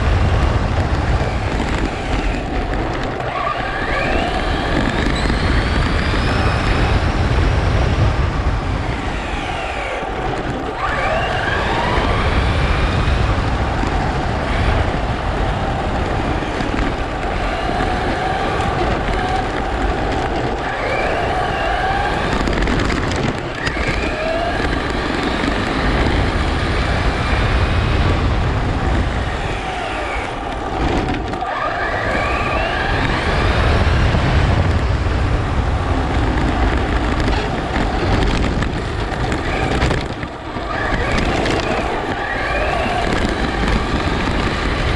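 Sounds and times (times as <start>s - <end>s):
electric motor whining: 0.0s - 44.9s
wind and tyre rumble: 0.0s - 44.9s.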